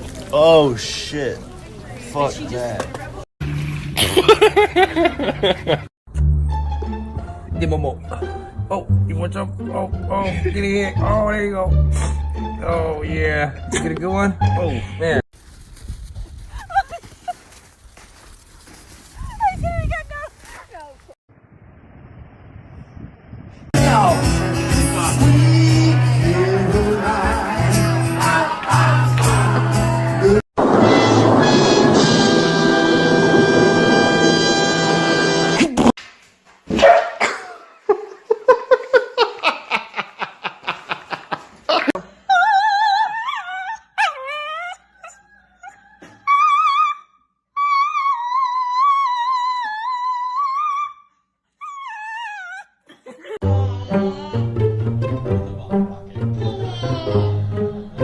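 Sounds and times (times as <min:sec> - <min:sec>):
held bass notes: 0:06.1 - 0:15.2, 0:23.8 - 0:35.6, 0:53.4 - 0:58.0
dog howling: 0:42.3 - 0:52.7.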